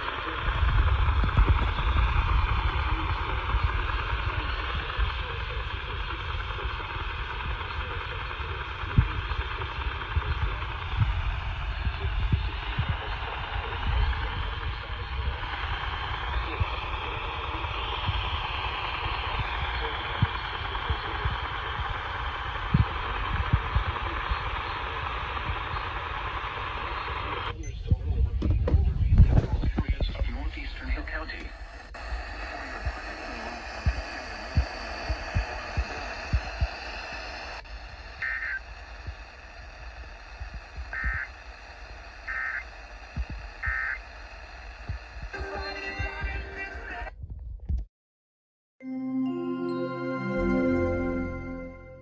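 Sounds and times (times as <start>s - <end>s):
radio static hiss: 0.0s - 47.2s
dull low thumps: 47.2s - 47.9s.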